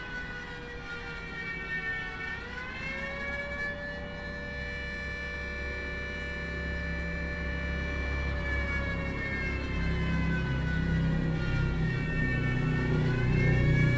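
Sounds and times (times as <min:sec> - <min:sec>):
warning siren tone: 0:03.0 - 0:13.9.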